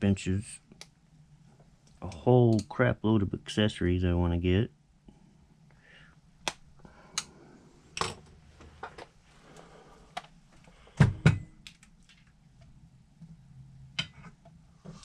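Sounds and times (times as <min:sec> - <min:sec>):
small parts clicking and tapping: 0:11.6 - 0:12.7.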